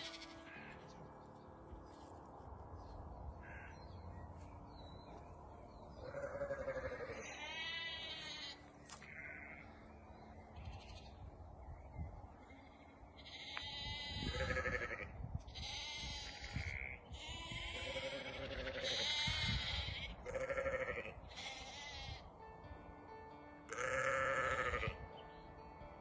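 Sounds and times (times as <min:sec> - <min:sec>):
sheep bleating: 0:00.0 - 0:00.8, 0:06.0 - 0:09.8, 0:10.6 - 0:11.2, 0:12.4 - 0:22.3, 0:23.7 - 0:25.0.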